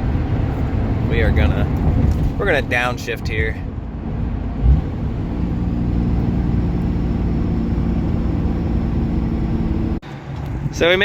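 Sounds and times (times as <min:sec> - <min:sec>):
diesel engine drone from inside cab: 0:04.0 - 0:10.5.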